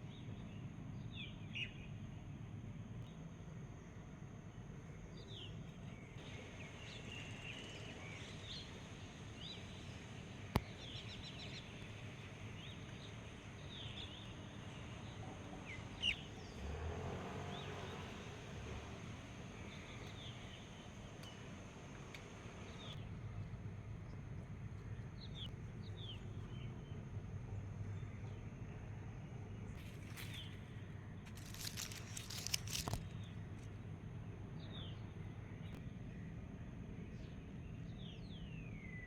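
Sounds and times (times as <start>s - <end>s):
small birds chirping: 4.6s - 16.7s, 19.0s - 36.3s.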